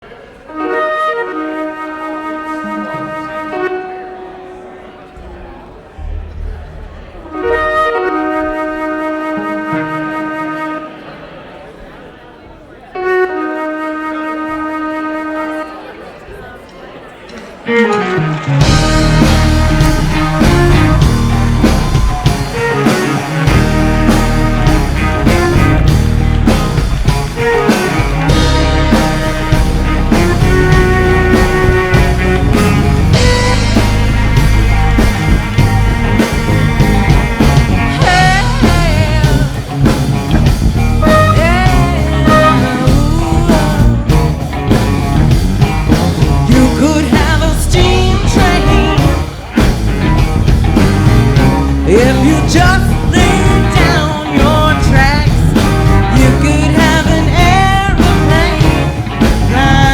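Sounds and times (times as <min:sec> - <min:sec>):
live rock band playing: 0:00.3 - 0:11.1, 0:17.4 - 0:59.9.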